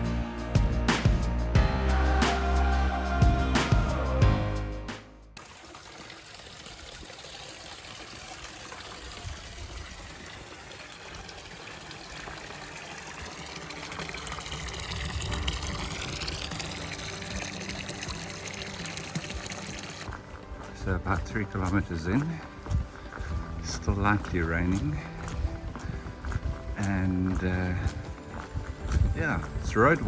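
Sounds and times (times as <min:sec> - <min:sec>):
music: 0:00.0 - 0:05.4, 0:13.8 - 0:30.0.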